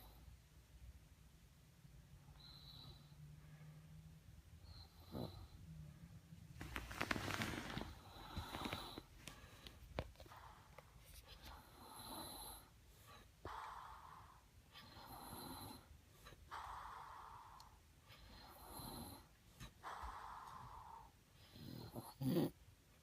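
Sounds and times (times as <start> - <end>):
faint slow snoring: 4.6 - 5.8, 6.9 - 9.1, 11.5 - 12.7, 13.5 - 15.9, 16.6 - 19.3, 20.0 - 22.6.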